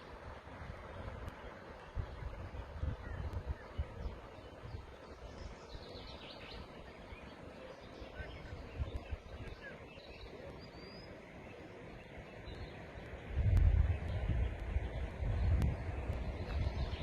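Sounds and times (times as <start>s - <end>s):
river water rushing: 0.0s - 13.0s
small birds chirping: 0.9s - 17.0s.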